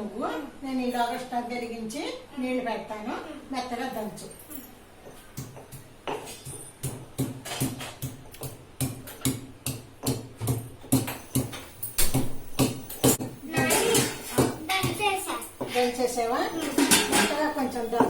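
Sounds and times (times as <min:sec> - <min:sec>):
pestle pounding in stone mortar: 0:05.3 - 0:15.0.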